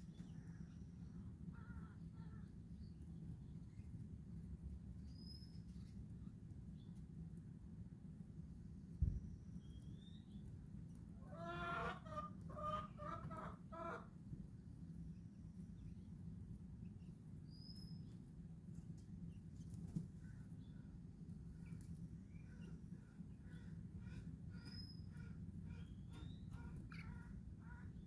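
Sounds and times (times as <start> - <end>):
steady low hum: 0.0 - 11.4, 12.0 - 28.0
chicken clucking: 11.2 - 14.1.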